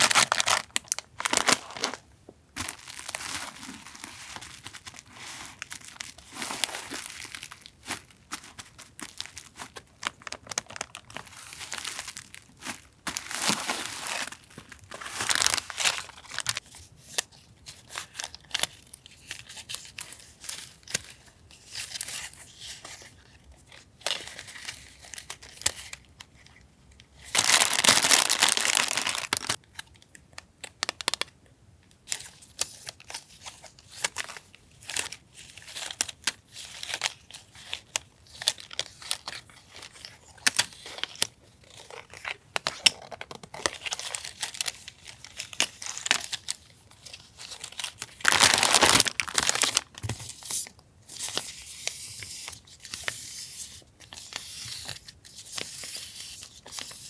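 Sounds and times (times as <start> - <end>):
wrapping tearing: 0.0 - 2.0, 2.6 - 16.6, 27.3 - 29.6, 37.9 - 50.5
paper and plastic crinkling: 0.0 - 26.6, 27.2 - 29.6, 32.1 - 57.0.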